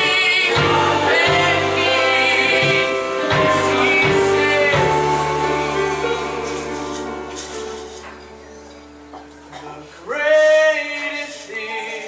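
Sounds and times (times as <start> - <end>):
voices and instruments holding chords: 0.0 - 12.0.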